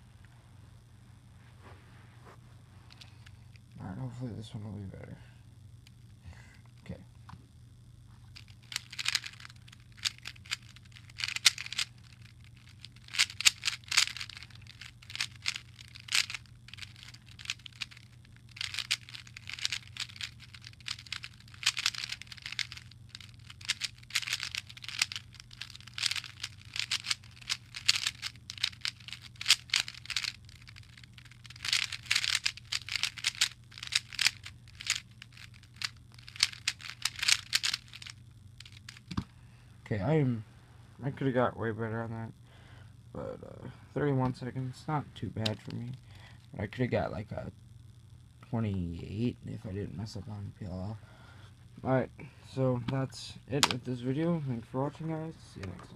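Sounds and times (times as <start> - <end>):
plastic puzzle cube clicking: 8.6 - 12.2, 12.8 - 39.2.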